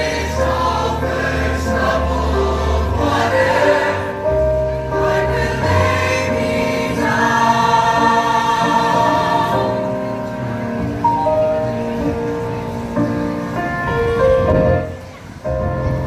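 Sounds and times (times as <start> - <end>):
choir singing gospel song: 0.0 - 10.8.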